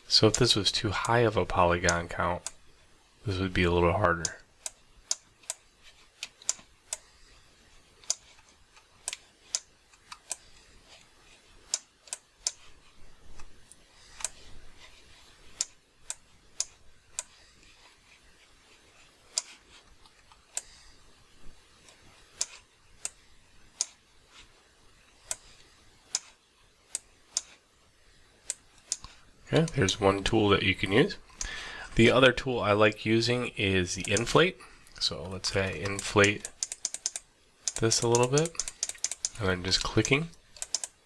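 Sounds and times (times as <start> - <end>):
mouse and keyboard clicks: 8.0 - 11.0, 11.7 - 12.7, 13.4 - 14.4, 25.2 - 27.6, 28.4 - 29.8, 35.7 - 41.0.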